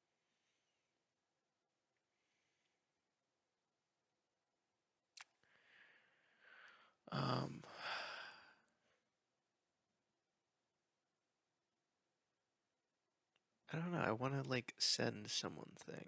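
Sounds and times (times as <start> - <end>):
person sighing: 6.5 - 8.6.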